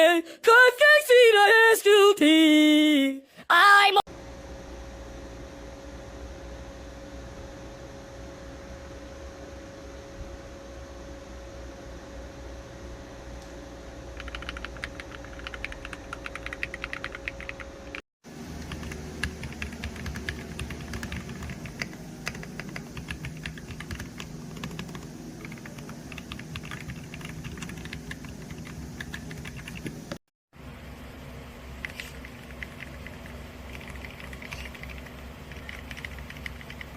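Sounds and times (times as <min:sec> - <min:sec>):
mechanical keyboard typing: 0:14.2 - 0:18.0, 0:18.6 - 0:30.2, 0:31.8 - 0:36.9.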